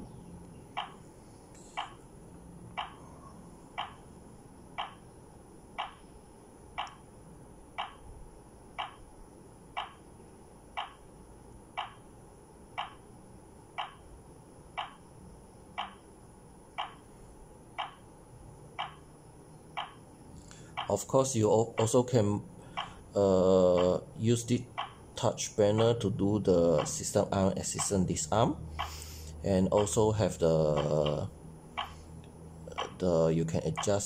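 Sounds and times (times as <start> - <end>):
alarm panel ticking: 0.4 - 1.1, 1.7 - 2.0, 2.6 - 6.1, 6.7 - 7.1, 7.7 - 8.1, 8.7 - 9.1, 9.7 - 10.1, 10.7 - 12.1, 12.7 - 14.1, 14.7 - 15.1, 15.7 - 16.1, 16.7 - 17.1, 17.7 - 18.1, 18.8 - 19.1, 19.7 - 34.0.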